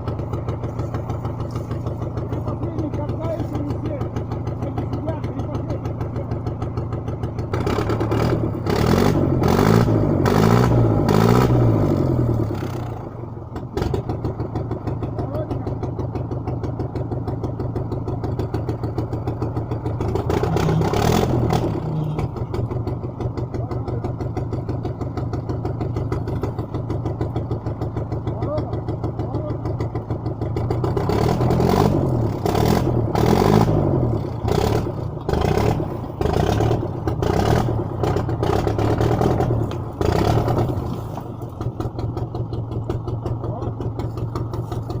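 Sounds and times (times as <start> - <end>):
tracked vehicle engine revving: 0.0 - 45.0.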